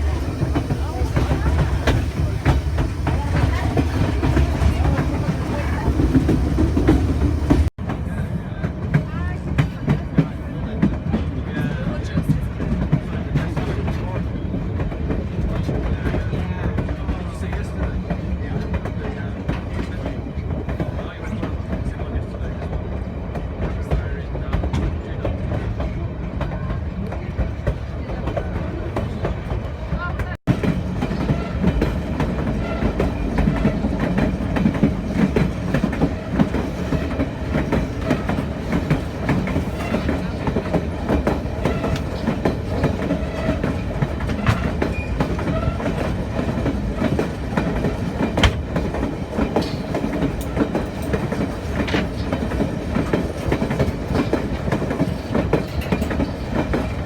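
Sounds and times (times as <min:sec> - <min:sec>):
wheels clacking over rail joints: 0:00.0 - 0:08.1, 0:22.7 - 0:57.0
train rumbling on track: 0:00.0 - 0:57.0.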